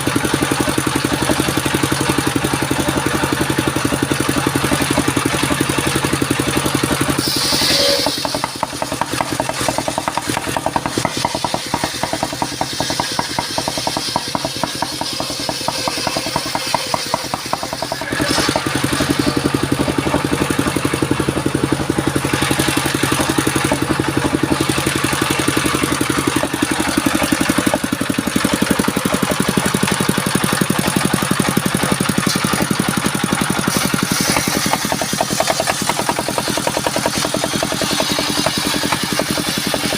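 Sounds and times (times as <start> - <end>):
circular saw engine humming: 0.6 - 39.9.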